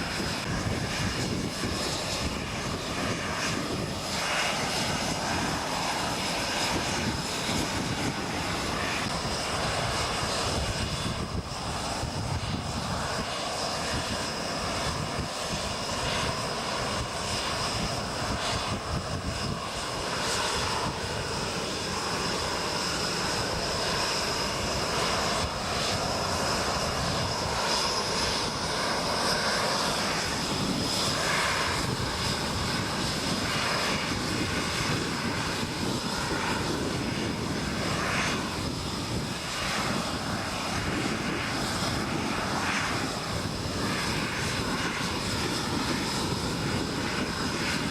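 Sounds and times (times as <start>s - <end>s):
high jet whine: 0.0s - 47.9s
jet engines rushing: 0.0s - 47.9s.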